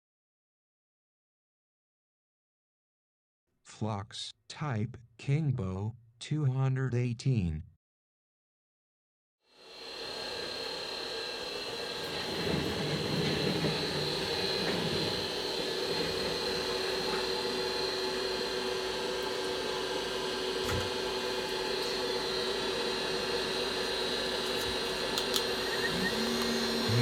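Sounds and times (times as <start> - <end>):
hot air station blowing with whine: 9.6 - 27.0.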